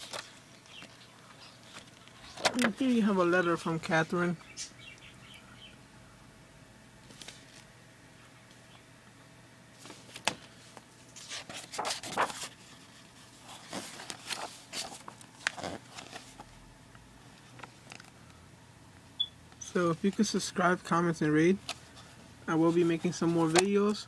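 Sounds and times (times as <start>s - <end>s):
paper and book pages rustling: 0.0s - 3.1s, 7.0s - 7.7s, 9.8s - 16.5s, 17.4s - 18.2s, 21.2s - 24.0s.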